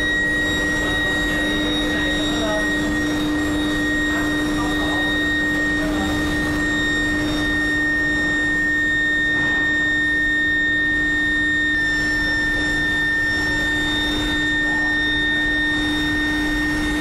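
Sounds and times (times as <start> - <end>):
rushing machine noise: 0.0 - 10.0
high-pitched whine: 0.0 - 17.0
low hum: 0.0 - 17.0.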